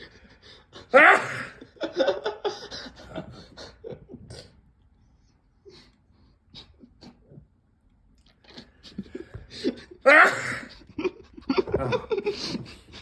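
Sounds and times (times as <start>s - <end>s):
man sneezing: 0.9s - 1.6s, 10.0s - 10.7s
laughter: 1.6s - 4.3s, 10.7s - 13.0s.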